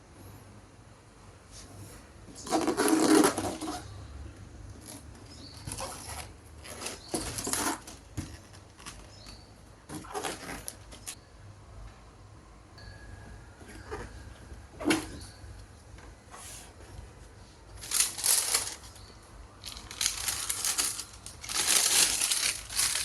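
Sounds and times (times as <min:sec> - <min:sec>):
packaging rustling: 0:17.8 - 0:23.0.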